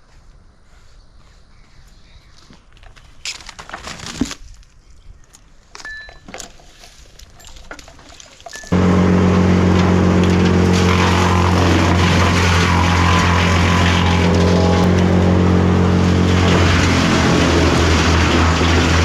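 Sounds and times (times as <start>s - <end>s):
large engine running at high speed: 8.7s - 19.0s.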